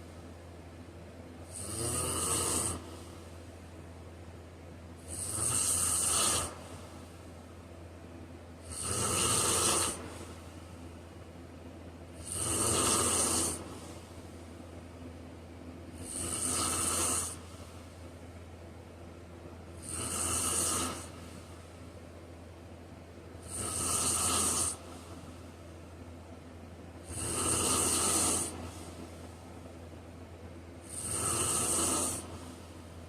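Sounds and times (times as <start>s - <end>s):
steady low hum: 0.0s - 33.0s
man snoring: 1.4s - 3.1s, 5.0s - 6.8s, 8.6s - 10.4s, 12.2s - 14.0s, 16.0s - 17.5s, 19.8s - 21.2s, 23.4s - 25.1s, 27.0s - 28.9s, 30.8s - 32.6s.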